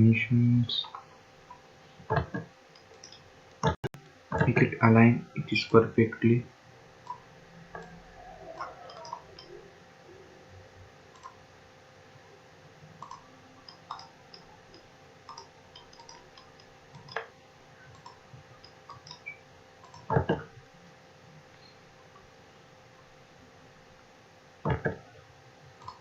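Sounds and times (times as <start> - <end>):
faint steady hum: 0.0 - 26.0
computer mouse clicking: 0.8 - 4.6, 7.0 - 7.2, 7.8 - 9.6, 11.1 - 11.4, 13.0 - 17.3, 17.9 - 20.5, 25.8 - 26.0.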